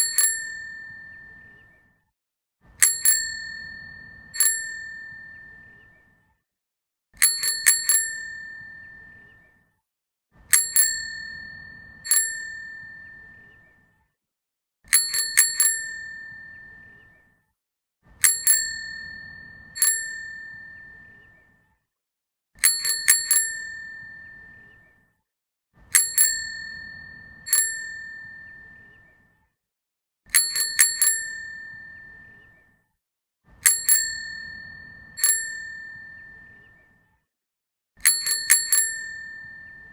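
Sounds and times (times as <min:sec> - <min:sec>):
bicycle bell ringing: 0:00.0 - 0:01.5, 0:02.8 - 0:05.8, 0:07.2 - 0:09.3, 0:10.5 - 0:13.5, 0:14.9 - 0:17.0, 0:18.2 - 0:21.2, 0:22.6 - 0:24.7, 0:25.9 - 0:29.0, 0:30.3 - 0:32.4, 0:33.6 - 0:36.6, 0:38.0 - 0:39.9.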